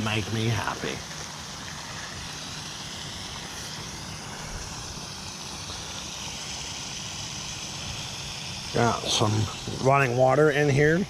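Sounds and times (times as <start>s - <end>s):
water flowing into pond: 0.0s - 11.0s.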